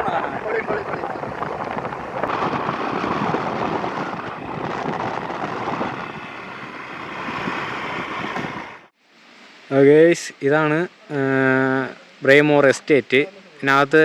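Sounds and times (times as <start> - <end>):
wind rushing over microphone: 0.0 - 8.9
road and engine noise: 0.0 - 14.0.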